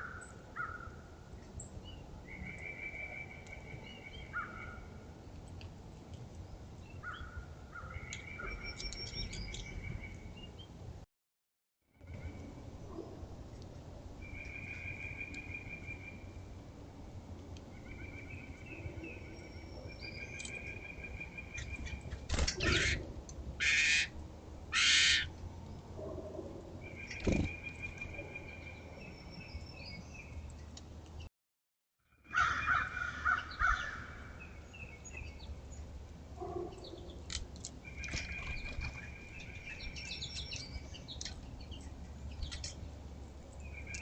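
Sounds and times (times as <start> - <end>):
harsh bird calls: 21.5 - 23.0, 23.6 - 24.1, 24.7 - 25.3.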